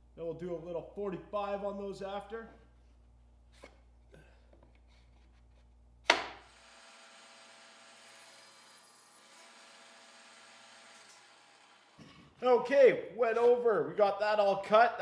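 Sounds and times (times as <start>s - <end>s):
wood knock: 6.1s - 6.4s.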